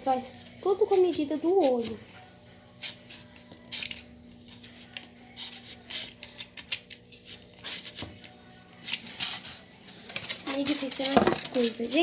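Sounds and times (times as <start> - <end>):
knife cutting styrofoam: 2.8 - 12.0.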